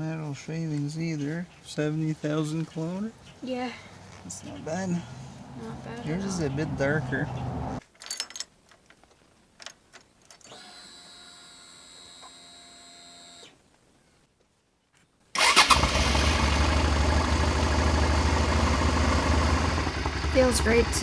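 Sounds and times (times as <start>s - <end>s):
motorcycle engine starting and idling: 4.3s - 7.8s, 15.4s - 21.0s.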